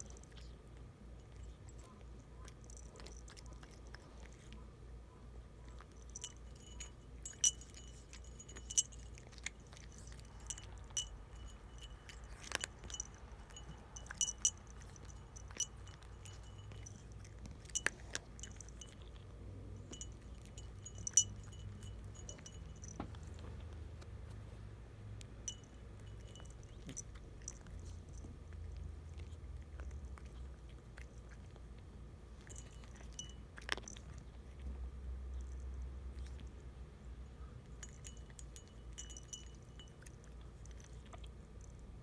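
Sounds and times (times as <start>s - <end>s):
cat eating treats clicking: 0.0s - 4.6s, 32.4s - 34.8s
steady low hum: 0.0s - 42.0s
bell-like ring: 10.3s - 17.0s, 19.9s - 23.0s.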